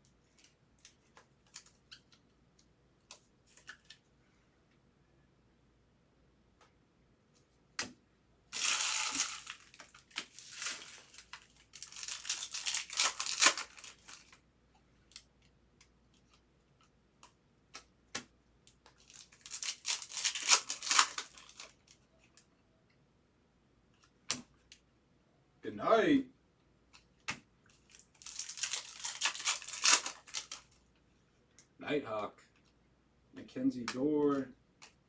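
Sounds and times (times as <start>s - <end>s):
wrappers torn open and crinkled: 8.6s - 14.4s, 18.9s - 22.0s, 27.8s - 30.8s
clicks and taps handling cards: 33.8s - 35.0s.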